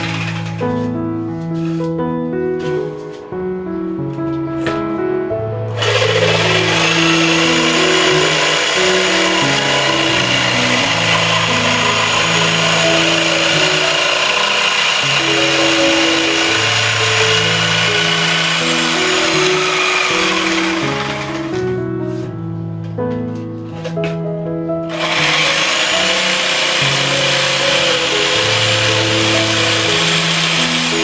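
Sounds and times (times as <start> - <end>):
electric power tool whining: 0.0 - 0.9, 5.7 - 21.8, 24.9 - 31.0
piano music: 0.0 - 31.0.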